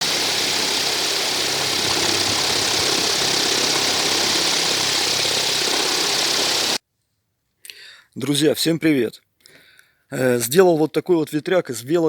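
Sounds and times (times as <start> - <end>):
blower air rushing: 0.0 - 6.8
low motor hum: 0.0 - 6.8.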